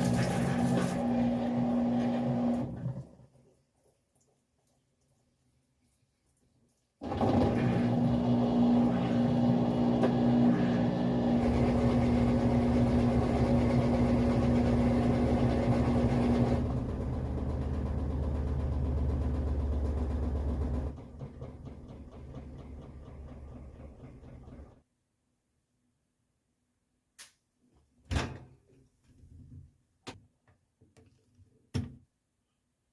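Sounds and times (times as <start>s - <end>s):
washing machine motor hum: 0.0s - 3.2s, 7.0s - 24.8s.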